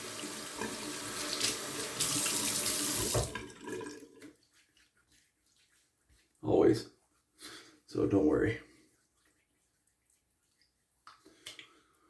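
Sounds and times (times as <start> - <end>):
water running from sink tap: 0.0 - 4.3
faint water trickling: 0.0 - 12.0.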